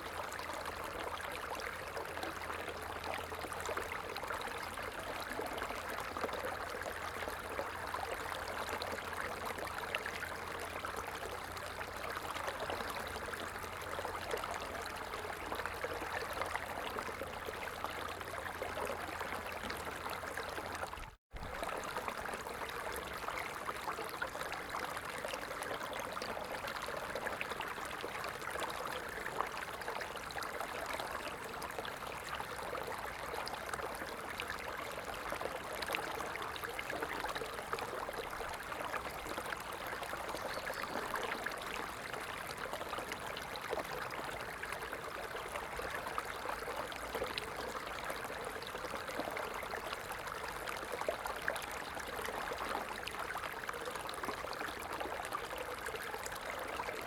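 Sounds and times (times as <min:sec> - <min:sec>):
stream water babbling: 0:00.0 - 0:57.0.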